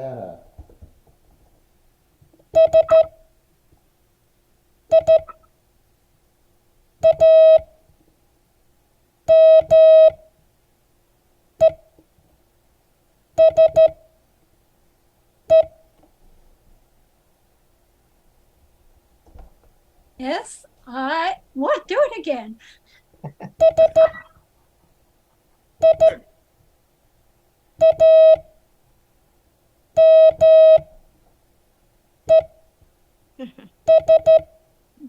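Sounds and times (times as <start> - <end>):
morse code beeps: 2.6 - 3.2, 4.9 - 5.4, 7.0 - 7.7, 9.3 - 10.2, 13.4 - 14.0, 23.6 - 24.3, 25.8 - 26.2, 27.8 - 28.4, 30.0 - 30.8, 33.9 - 34.5.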